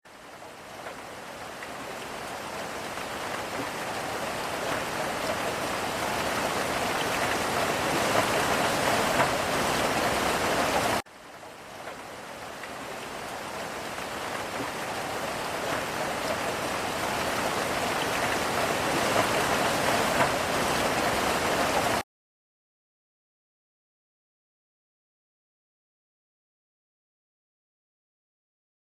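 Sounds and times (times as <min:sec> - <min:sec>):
steady rain falling: 0:00.1 - 0:22.0.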